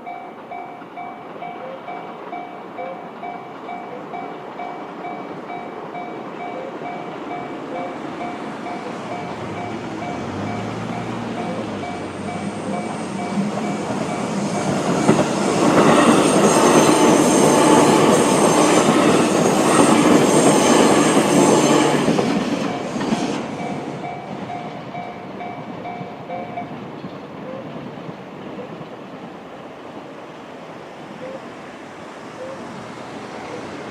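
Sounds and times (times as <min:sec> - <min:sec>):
level-crossing bell ringing: 0:00.0 - 0:15.2
train wheels on rails: 0:00.0 - 0:33.9.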